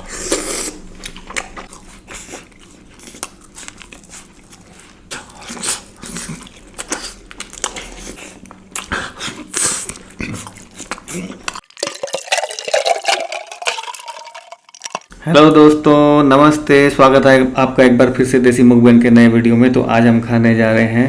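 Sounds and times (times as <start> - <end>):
chewing and mouth smacks: 0.2 - 11.9.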